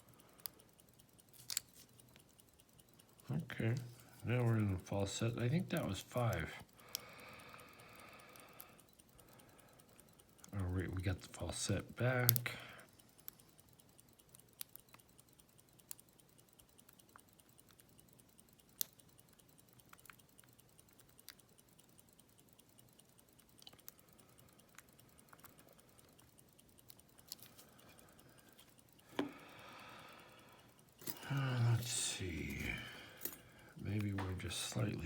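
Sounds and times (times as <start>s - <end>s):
lock pick clicking: 0.5s - 3.1s, 30.8s - 34.4s.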